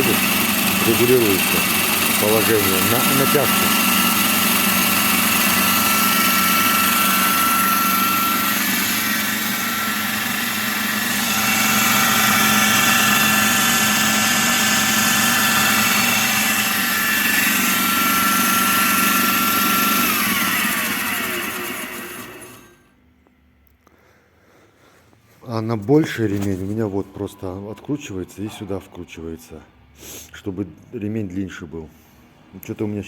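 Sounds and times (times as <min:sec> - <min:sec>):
rushing belt noise: 0:00.0 - 0:22.8
belt grinder motor whining: 0:00.0 - 0:22.9.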